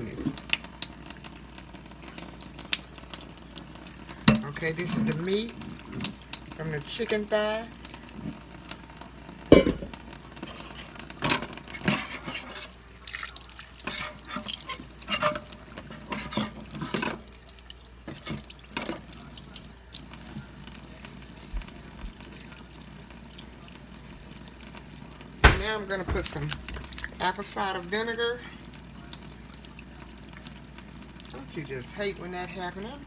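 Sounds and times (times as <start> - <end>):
water splashing and dripping: 0.0 - 33.0
dishes knocking and clattering: 4.2 - 5.2, 9.5 - 12.6, 13.9 - 17.2, 25.4 - 27.2.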